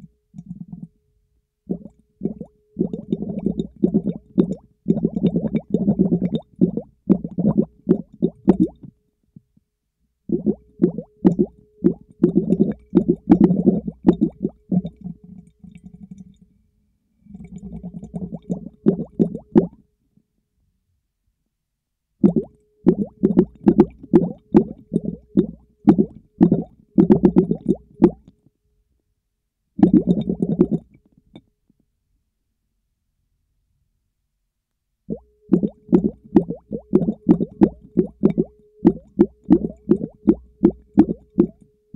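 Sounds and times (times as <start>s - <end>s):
underwater bubbling and popping: 1.7s - 8.9s, 10.3s - 16.4s, 17.3s - 19.8s, 22.2s - 28.3s, 29.8s - 31.0s, 35.1s - 41.6s.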